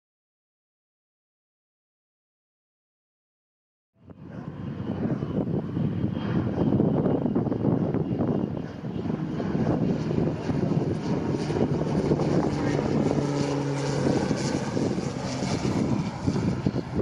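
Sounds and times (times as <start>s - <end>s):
propeller aircraft droning: 4.0s - 17.0s.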